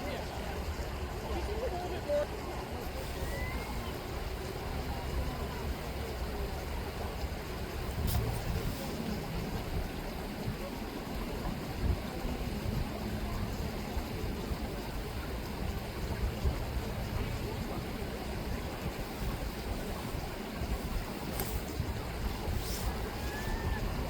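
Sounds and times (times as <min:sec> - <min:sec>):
river water rippling: 0:00.0 - 0:24.0.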